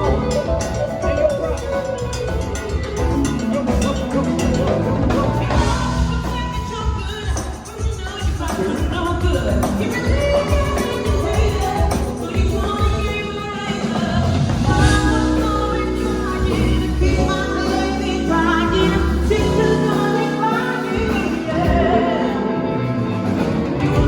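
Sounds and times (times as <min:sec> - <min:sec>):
person singing: 0:00.0 - 0:24.0
sustained low bass notes: 0:14.4 - 0:24.0.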